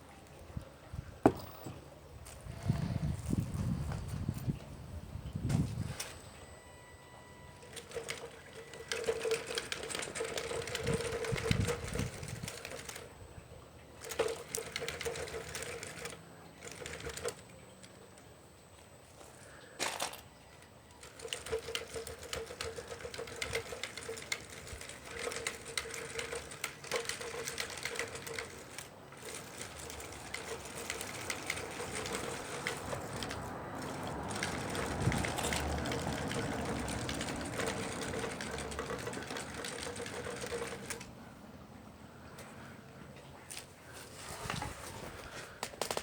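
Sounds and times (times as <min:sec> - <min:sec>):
electric motor and pump whining: 0:00.0 - 0:41.5
rapid mechanical clicking and rattling: 0:07.5 - 0:18.3, 0:19.8 - 0:41.2, 0:44.4 - 0:46.0.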